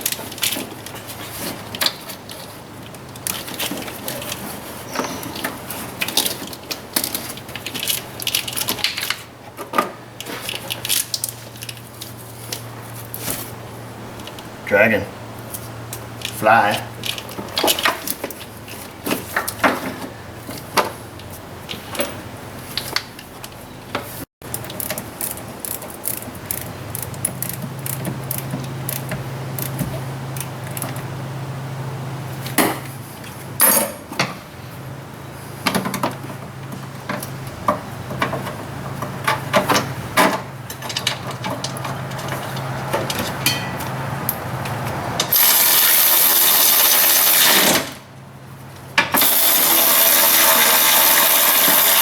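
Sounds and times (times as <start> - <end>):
hand tools clinking: 40.2 - 44.0
power tool running: 45.3 - 48.0, 49.2 - 52.0.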